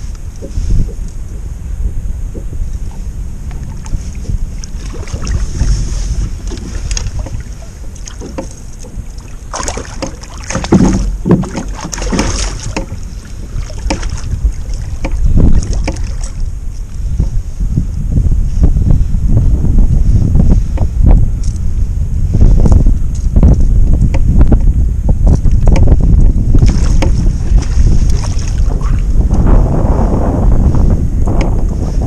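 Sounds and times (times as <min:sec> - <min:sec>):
wind buffeting microphone: 0:00.0 - 0:32.0
knocks and clatter: 0:09.8 - 0:13.0.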